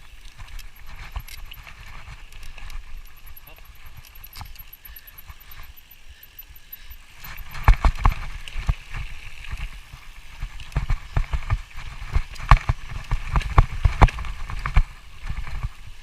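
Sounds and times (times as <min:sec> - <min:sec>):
bicycle rattling on rough trail: 0:00.0 - 0:16.0.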